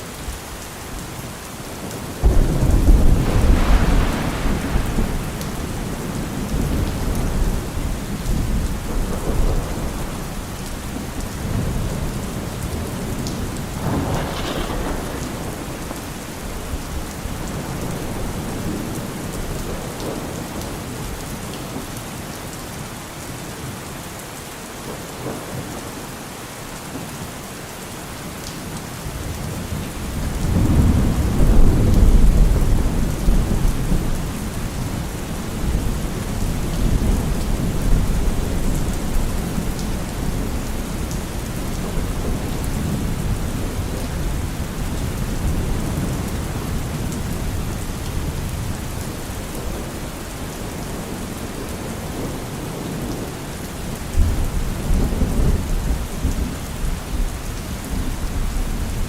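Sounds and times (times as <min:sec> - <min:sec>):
steady rain: 0:00.0 - 0:59.0
rolling thunder: 0:01.8 - 0:21.1, 0:29.2 - 0:53.3.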